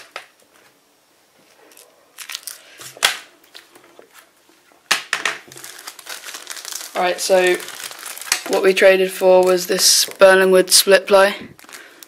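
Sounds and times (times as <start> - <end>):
packaging rustling and crinkling: 1.4 - 4.3, 5.4 - 12.0.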